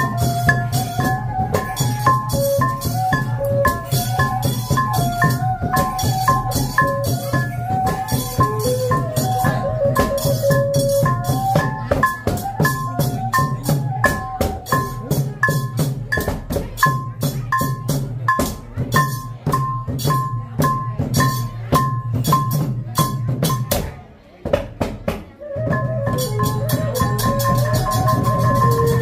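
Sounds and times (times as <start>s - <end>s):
wavering high melody: 0.0s - 14.9s, 25.4s - 29.0s.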